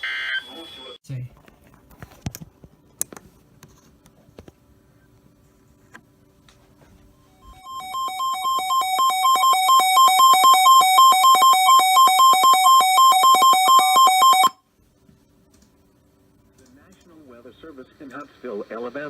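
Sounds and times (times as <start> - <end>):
rapid two-tone alarm beeping: 7.3 - 14.6.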